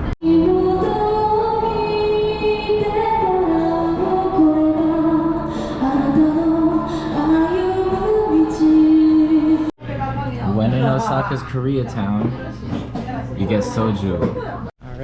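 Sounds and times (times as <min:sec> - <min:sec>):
woman singing slow melody: 0:00.2 - 0:09.7.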